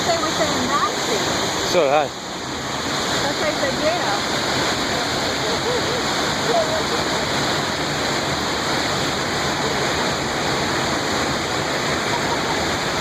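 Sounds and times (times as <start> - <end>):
waterfall roaring: 0.0 - 13.0.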